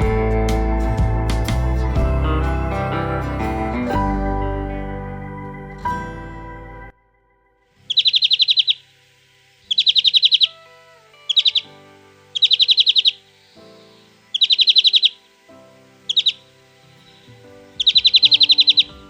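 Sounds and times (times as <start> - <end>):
soft background music: 0.0 - 19.0
bird singing buzzy trills: 7.8 - 19.0.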